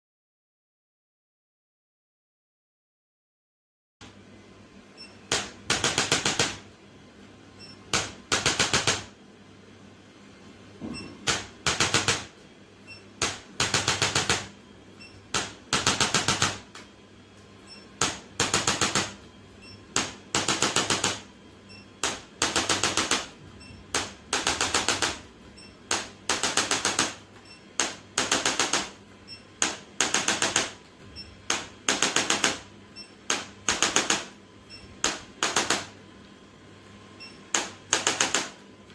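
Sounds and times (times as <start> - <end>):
rapid clicking bursts: 5.3 - 6.6, 7.9 - 9.1, 11.3 - 12.3, 13.2 - 14.5, 15.3 - 16.7, 18.0 - 19.2, 20.0 - 21.3, 22.0 - 25.3, 25.9 - 29.0, 29.6 - 30.8, 31.5 - 32.7, 33.3 - 34.3, 37.5 - 38.6.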